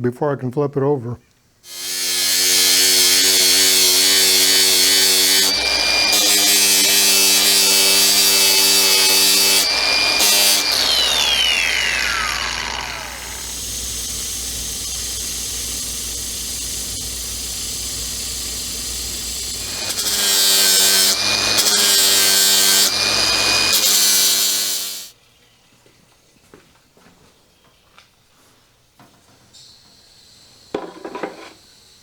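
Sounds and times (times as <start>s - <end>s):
electric grinder whining: 1.7s - 25.1s, 30.2s - 32.0s
steady hiss: 13.4s - 22.9s, 29.5s - 32.0s.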